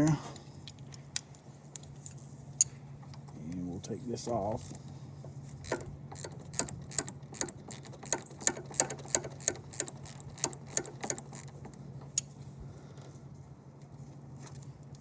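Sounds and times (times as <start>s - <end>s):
socket ratchet clicking: 5.6s - 12.3s.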